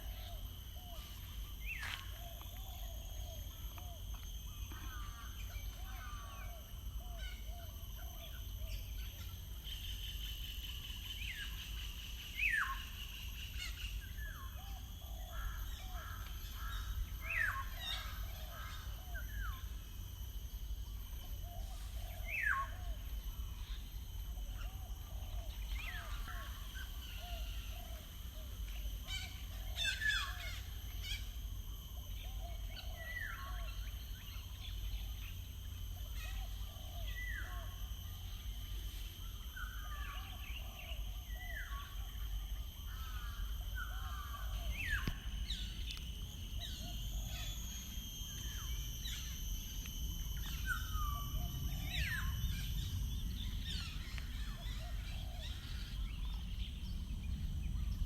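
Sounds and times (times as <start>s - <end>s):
birds singing: 0.0s - 20.1s, 23.6s - 58.0s.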